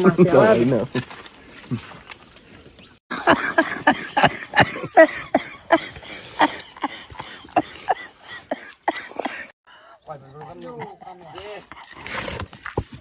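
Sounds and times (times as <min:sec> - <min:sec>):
person coughing: 0:06.8 - 0:09.5.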